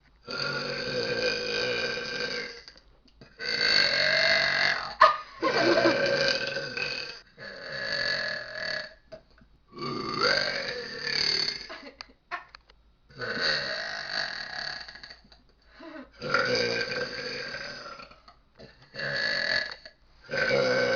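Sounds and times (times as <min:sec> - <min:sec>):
woman burping: 0:03.4 - 0:08.9.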